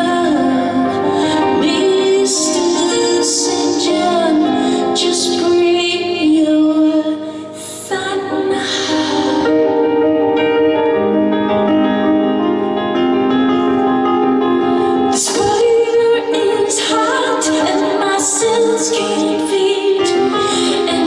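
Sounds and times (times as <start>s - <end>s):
woman singing: 0.0s - 9.7s, 14.9s - 21.0s
piano accompaniment: 0.0s - 21.0s.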